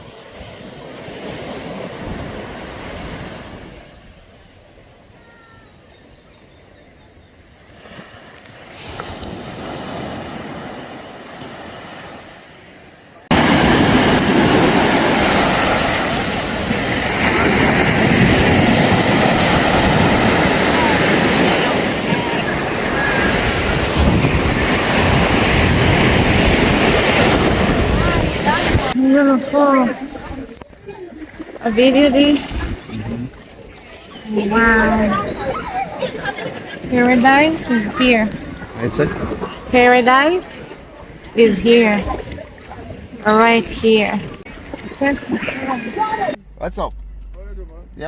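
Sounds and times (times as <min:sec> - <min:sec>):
water rushing: 0:00.0 - 0:05.6, 0:07.8 - 0:48.0
ocean waves washing: 0:00.0 - 0:06.8, 0:07.4 - 0:48.0
wind buffeting microphone: 0:13.3 - 0:48.0.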